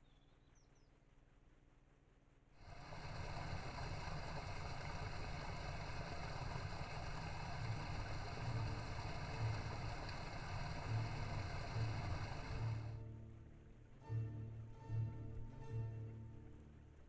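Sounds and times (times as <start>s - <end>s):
stream water rushing: 2.6s - 13.0s
electronic hum: 2.6s - 13.1s.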